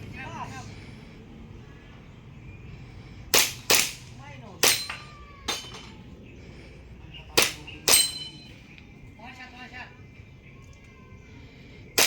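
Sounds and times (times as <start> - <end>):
airsoft gun shots: 3.3 - 5.0, 7.4 - 8.3.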